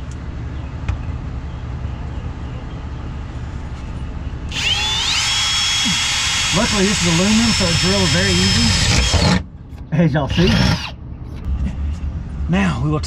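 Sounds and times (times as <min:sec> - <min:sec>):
low steady rumble: 0:00.0 - 0:13.0
power drill whining: 0:04.5 - 0:09.4, 0:10.3 - 0:10.9.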